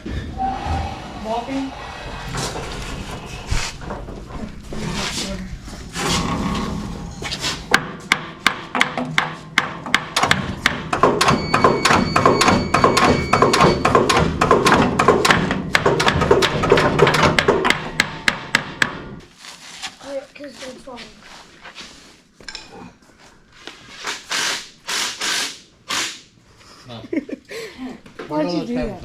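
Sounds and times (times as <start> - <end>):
hammer striking metal: 6.0 - 19.2.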